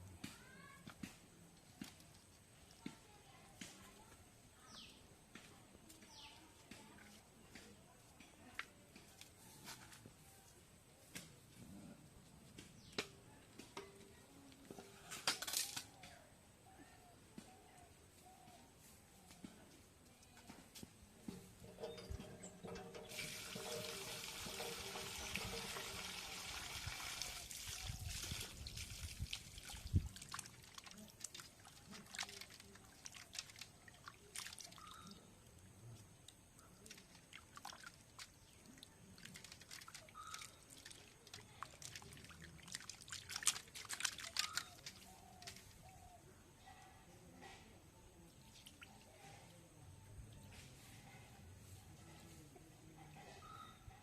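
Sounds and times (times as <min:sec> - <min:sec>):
water pouring: 0:21.6 - 0:35.1, 0:36.8 - 0:45.1
water splashing and dripping: 0:22.6 - 0:35.2, 0:36.2 - 0:45.7.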